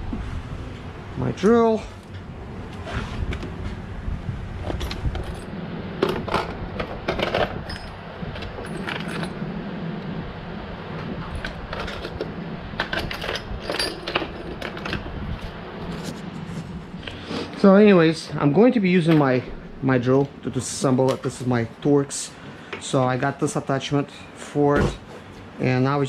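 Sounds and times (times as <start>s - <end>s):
metal tools clinking and rattling: 6.1s - 9.4s, 11.3s - 15.1s.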